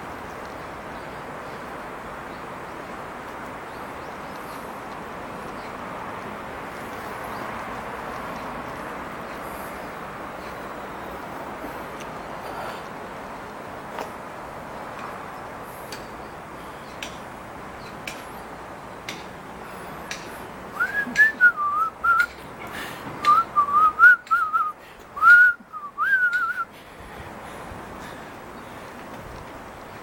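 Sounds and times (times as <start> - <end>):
steady background noise: 0.0 - 30.0
person whistling: 20.8 - 22.3, 23.2 - 26.7.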